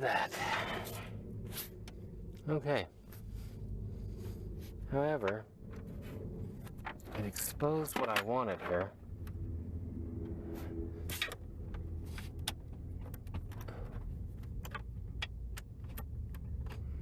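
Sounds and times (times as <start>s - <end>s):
steady low hum: 0.0s - 17.0s
hands and tools clicking on plastic: 11.2s - 17.0s.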